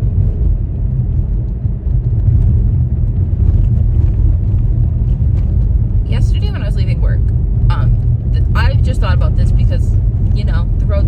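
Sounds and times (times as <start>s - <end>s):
road and engine noise in car: 0.0s - 11.0s.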